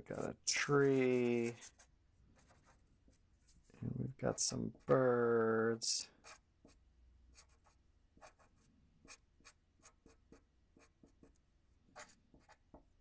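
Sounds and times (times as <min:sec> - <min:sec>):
pen scratching on paper: 0:00.1 - 0:03.6, 0:06.2 - 0:12.8.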